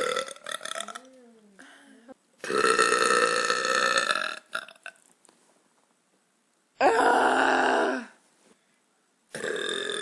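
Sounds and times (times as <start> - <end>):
woman burping: 0.0 - 4.8, 9.3 - 10.0.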